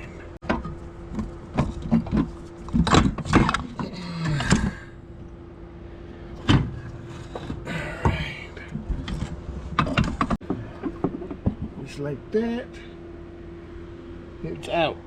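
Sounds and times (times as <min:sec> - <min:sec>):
faint steady hum: 0:00.0 - 0:15.0
metal knocks and clunks: 0:00.4 - 0:04.8, 0:06.3 - 0:11.8.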